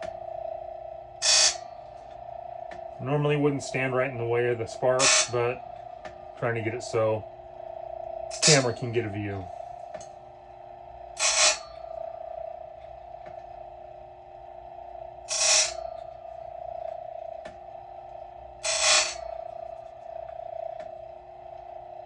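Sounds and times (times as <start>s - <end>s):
grinder motor whine: 0.0s - 22.0s
grinding stone rasps: 1.2s - 1.6s, 4.8s - 5.6s, 15.3s - 15.8s, 18.6s - 19.2s.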